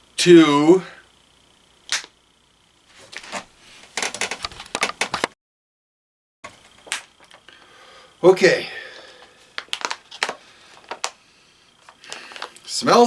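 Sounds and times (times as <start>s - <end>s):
sharp click: 1.9s - 2.2s
crackling plastic packaging: 9.2s - 11.2s.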